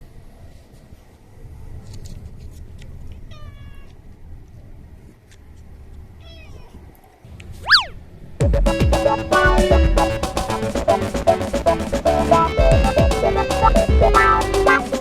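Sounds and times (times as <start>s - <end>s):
cat meowing: 3.3s - 4.0s, 6.2s - 6.8s
loud rising and falling sweep: 7.6s - 15.0s.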